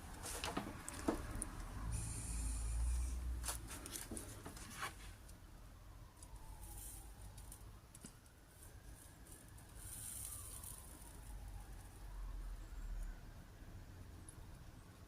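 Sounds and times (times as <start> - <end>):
faint wavering whistle-like tone: 9.7 - 13.3.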